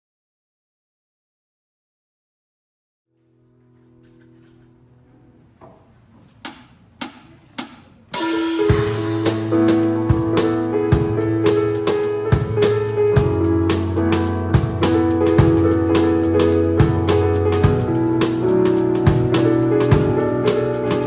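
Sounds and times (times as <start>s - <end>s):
drum hits: 6.5s - 21.0s
soft keyboard chord: 8.2s - 21.0s
worship band playing: 8.2s - 21.0s.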